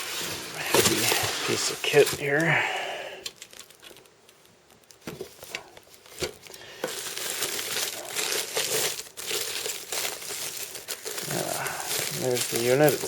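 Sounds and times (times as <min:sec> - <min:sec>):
packaging crinkling: 0:00.0 - 0:02.6, 0:03.2 - 0:13.0.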